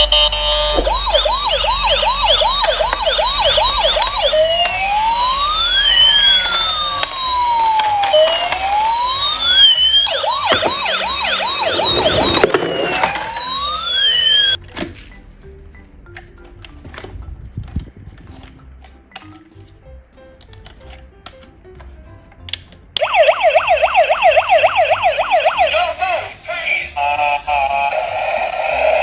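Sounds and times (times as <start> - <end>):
toy siren yelp and wail: 0.0 - 14.6, 23.0 - 29.0.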